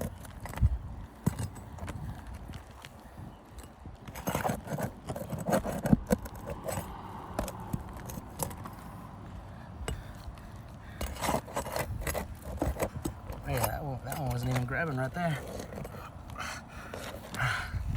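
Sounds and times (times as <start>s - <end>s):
metal tool scraping roof shingles: 4.1s - 6.8s, 10.9s - 16.0s.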